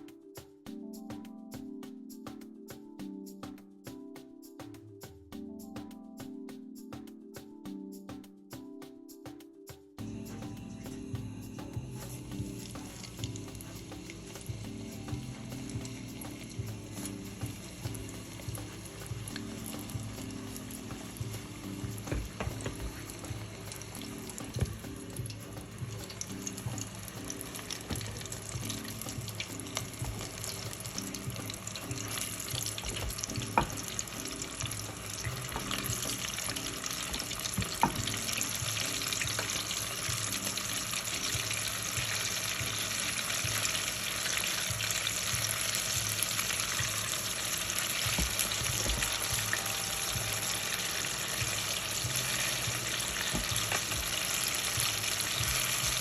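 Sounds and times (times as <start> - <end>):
chicken deep-frying in oil: 12.1 - 56.0.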